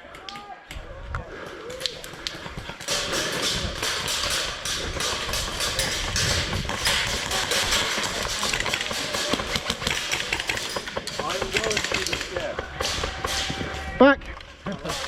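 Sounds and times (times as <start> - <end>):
airsoft guns firing: 2.2 - 14.0.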